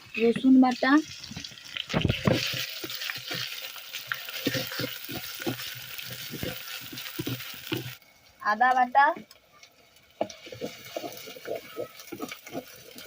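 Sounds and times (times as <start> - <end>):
onions sizzling in oil: 0.0 - 13.0
spatula scraping a pan: 2.1 - 8.0, 10.2 - 13.0.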